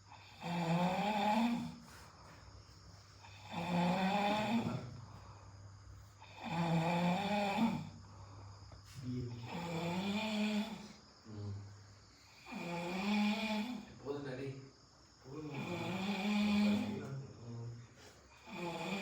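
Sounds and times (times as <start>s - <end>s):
quiet breathing: 0.0s - 14.2s, 15.0s - 19.0s
person snoring: 0.1s - 1.9s, 3.2s - 5.1s, 6.2s - 8.0s, 9.2s - 11.0s, 12.3s - 14.0s, 15.4s - 17.2s, 18.4s - 19.0s.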